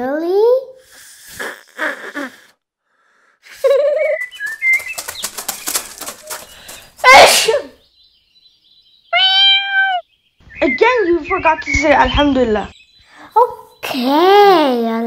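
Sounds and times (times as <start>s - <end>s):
child sneezing: 7.0s - 7.8s
cartoon bird chirping and whistling: 9.1s - 10.0s.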